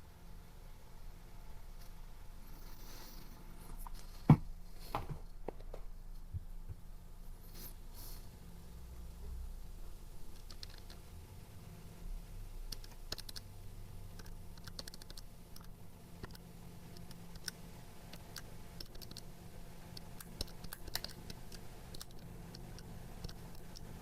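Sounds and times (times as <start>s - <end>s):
low steady hum: 0.0s - 24.0s
calculator keys clicking: 10.4s - 11.0s, 12.7s - 13.4s, 14.2s - 16.4s, 17.0s - 19.3s, 20.0s - 23.9s.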